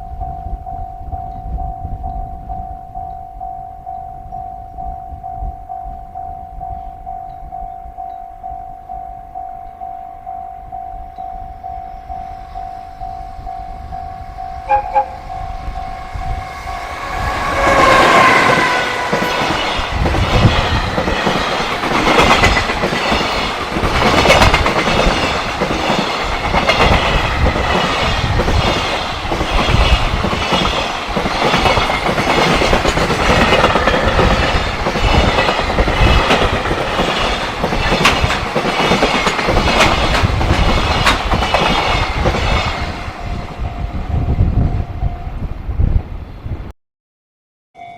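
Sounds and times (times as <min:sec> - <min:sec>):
train horn blast: 0:14.4 - 0:19.6
train wheels clacking over rail joints: 0:17.4 - 0:42.9.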